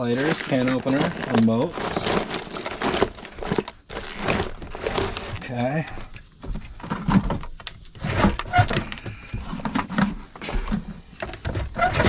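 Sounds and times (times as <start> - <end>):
small objects knocking together: 0.0 - 6.0
rustling: 0.0 - 12.0.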